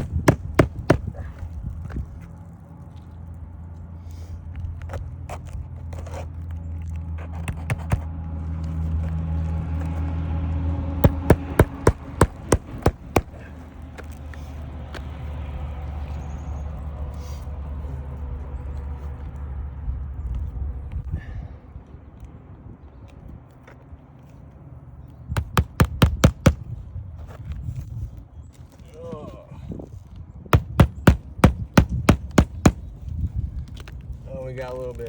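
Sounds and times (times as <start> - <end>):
hammer driving nails into shingle: 0.0 - 1.3, 11.0 - 13.5, 25.4 - 26.7, 30.5 - 32.9.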